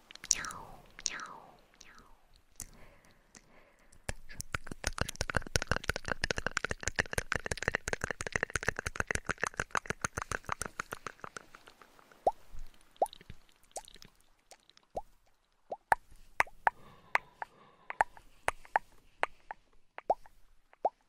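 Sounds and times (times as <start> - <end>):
rapid hollow tapping: 4.1 - 11.9.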